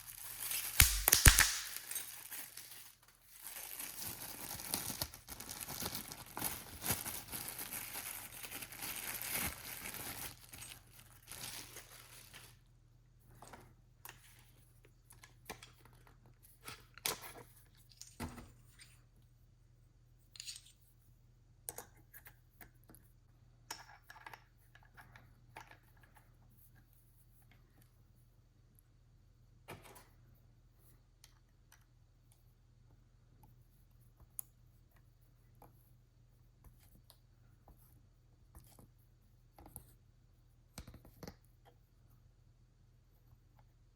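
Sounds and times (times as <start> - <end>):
packaging crinkling and tearing: 0.0 - 12.5.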